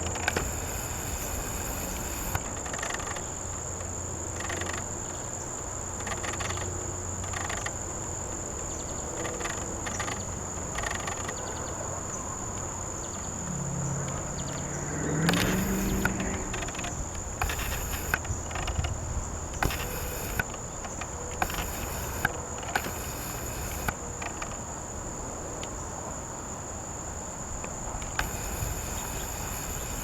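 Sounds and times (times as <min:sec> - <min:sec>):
insects chirping: 0:00.0 - 0:30.0
insects trilling: 0:00.0 - 0:30.0
low buzzing hum rising in pitch: 0:13.1 - 0:17.6.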